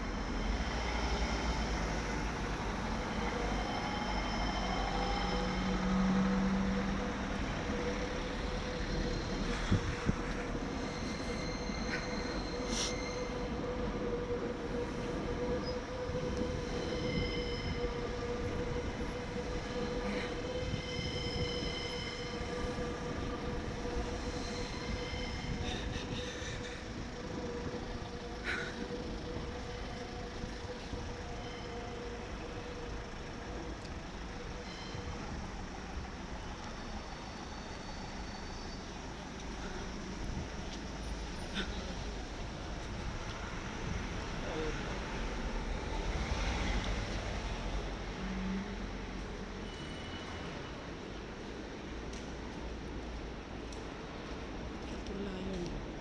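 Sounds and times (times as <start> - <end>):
train whining: 0.0 - 56.0
high-pitched wheel squeals: 2.9 - 33.7, 34.4 - 36.1, 36.8 - 39.2, 49.5 - 50.8.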